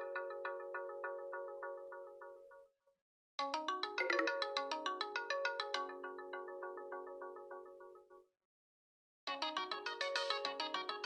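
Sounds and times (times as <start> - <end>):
phone ringtone melody: 3.8 - 4.8.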